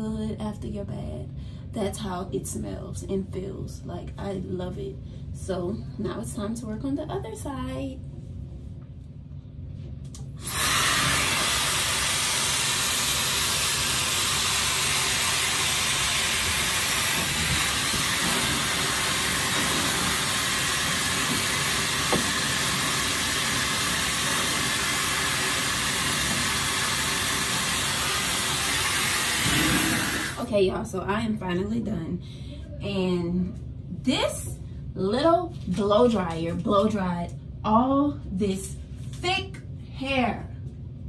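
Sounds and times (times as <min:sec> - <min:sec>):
hair dryer blowing: 0:10.4 - 0:30.4.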